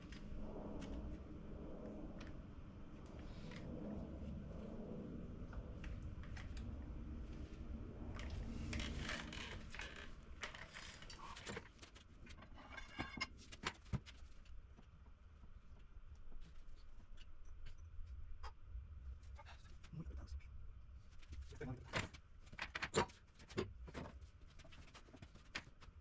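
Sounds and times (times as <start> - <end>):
low rumble: 0.0 - 11.4.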